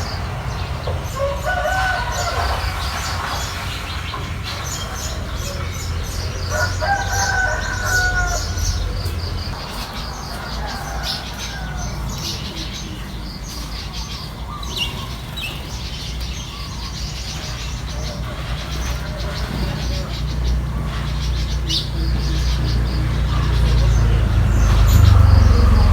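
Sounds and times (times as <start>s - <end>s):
small birds chirping: 0.0s - 25.9s
rooster crowing: 1.0s - 3.0s, 6.5s - 9.2s, 10.1s - 12.5s
steady low rumble: 22.9s - 25.9s.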